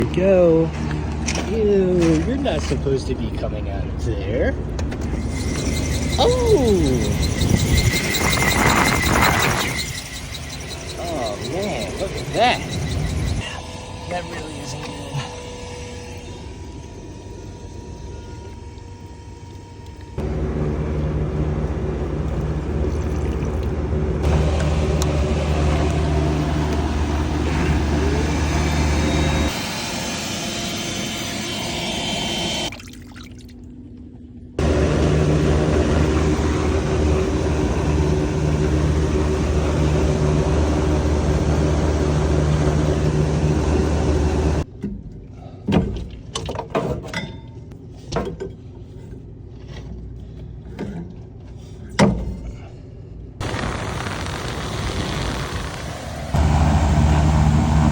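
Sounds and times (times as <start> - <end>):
wet dry vacuum running: 4.9 - 15.8, 16.5 - 32.7, 34.6 - 44.6, 53.4 - 57.9
water gurgling through vacuum: 53.4 - 56.4.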